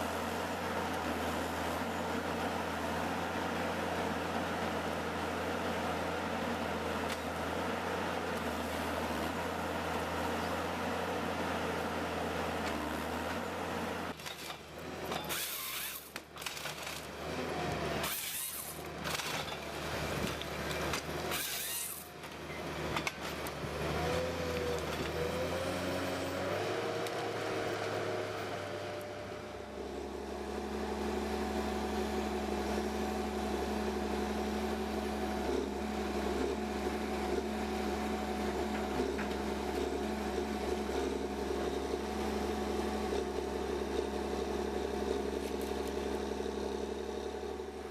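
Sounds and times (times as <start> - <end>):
steady engine hum: 16.8 - 47.9.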